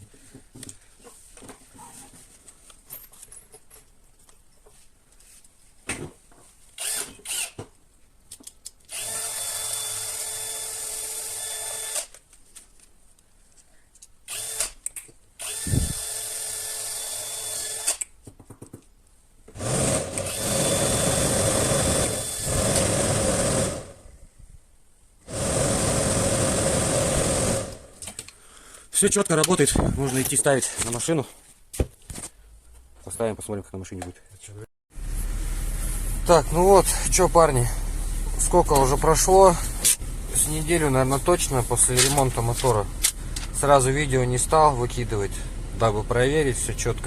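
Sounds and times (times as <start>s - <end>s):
blower motor running: 19.6s - 24.1s, 25.3s - 28.0s, 35.0s - 43.6s.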